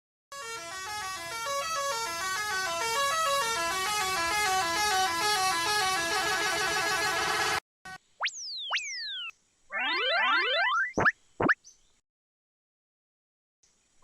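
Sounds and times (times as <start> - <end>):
horn-like warning tones: 0.3 - 8.0.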